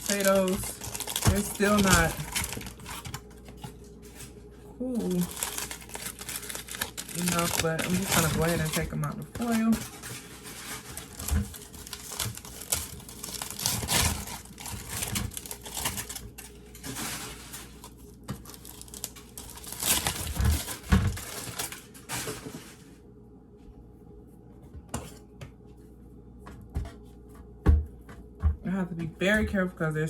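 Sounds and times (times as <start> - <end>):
aluminium foil crinkling and tearing: 0.0 - 22.4.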